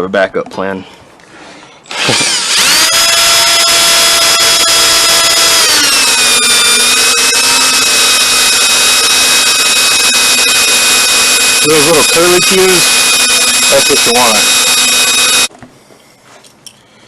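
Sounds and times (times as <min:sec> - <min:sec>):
electric drill whining: 0:01.9 - 0:15.5.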